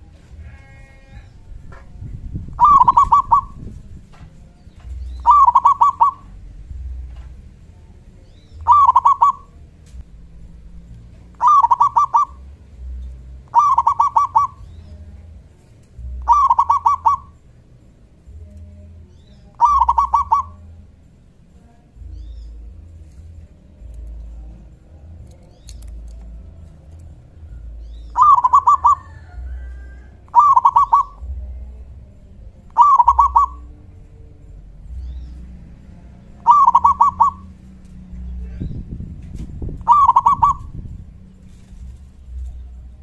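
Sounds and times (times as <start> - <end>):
dove cooing song: 2.4 - 3.8, 4.9 - 7.1, 8.5 - 9.6, 11.1 - 15.2, 16.1 - 17.5, 19.4 - 20.8, 23.4 - 31.9, 32.7 - 35.4, 36.2 - 38.9, 39.7 - 42.9.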